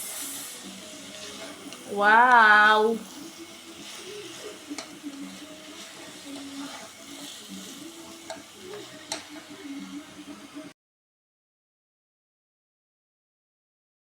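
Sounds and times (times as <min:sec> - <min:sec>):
food sizzling in a pan: 0:00.0 - 0:10.8.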